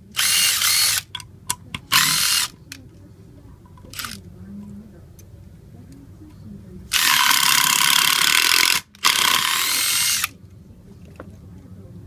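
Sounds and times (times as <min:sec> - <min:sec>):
impact driver rasping: 0:01.8 - 0:02.5, 0:06.9 - 0:10.3.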